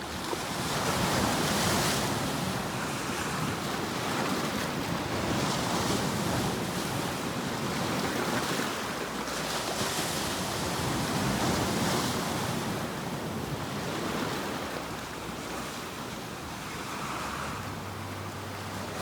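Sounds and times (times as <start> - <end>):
ocean waves breaking on shore: 0.0 - 19.0.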